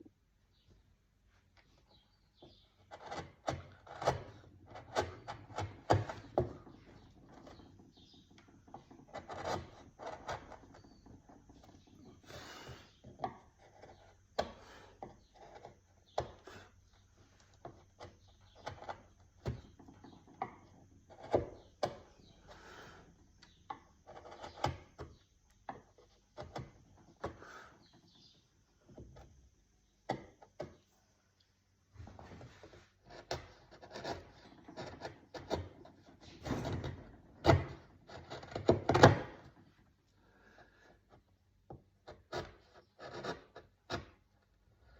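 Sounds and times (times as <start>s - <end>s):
hand tool scraping wood: 1.9s - 25.2s, 32.3s - 39.6s, 42.0s - 44.3s.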